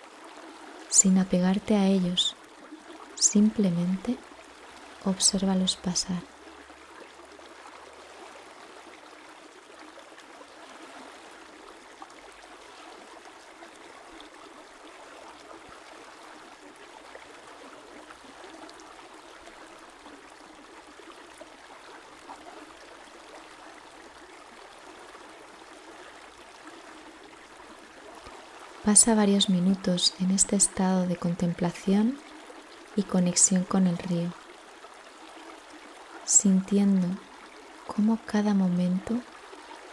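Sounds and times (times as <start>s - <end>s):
river water flowing: 0.0s - 39.9s
small water splashes: 2.2s - 28.9s, 31.2s - 36.4s, 39.0s - 39.9s.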